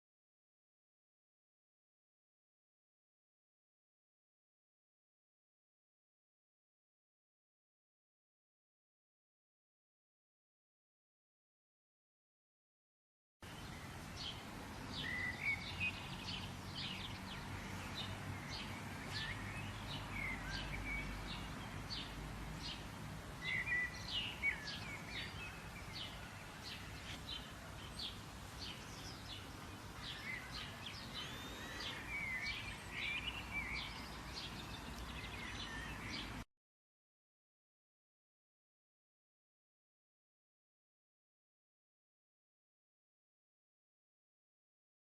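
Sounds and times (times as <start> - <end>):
birds chirping and calling: 13.5 - 22.8, 23.4 - 36.4.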